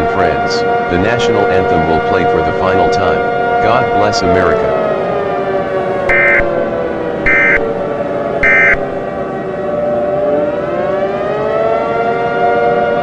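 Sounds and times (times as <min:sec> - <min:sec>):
civil defense siren wailing: 0:00.0 - 0:13.0
short high beeps: 0:06.1 - 0:06.5, 0:07.3 - 0:07.6, 0:08.4 - 0:08.8.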